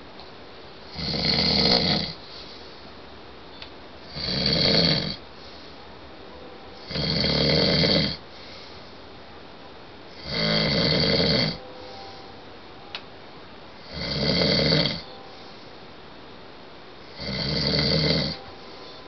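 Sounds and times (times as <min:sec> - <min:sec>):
man snoring: 0:00.9 - 0:02.2, 0:04.1 - 0:05.2, 0:06.8 - 0:08.2, 0:10.1 - 0:11.6, 0:13.8 - 0:15.2, 0:17.1 - 0:18.4.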